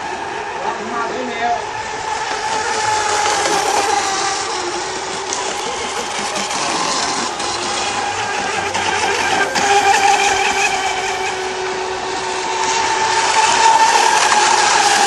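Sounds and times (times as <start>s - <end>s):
electric boat motor whine: 0.0s - 15.0s.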